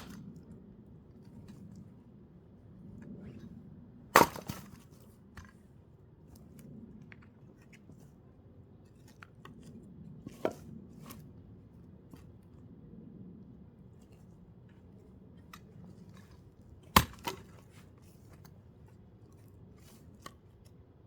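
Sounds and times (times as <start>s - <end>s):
axe striking log: 0.0s - 0.2s, 4.1s - 4.8s, 16.9s - 17.5s.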